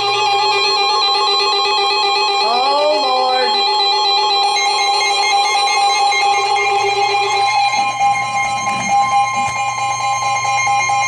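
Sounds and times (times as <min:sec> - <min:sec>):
synthesized electronic music tones: 0:00.0 - 0:11.0
steady high alert tone: 0:02.4 - 0:09.3.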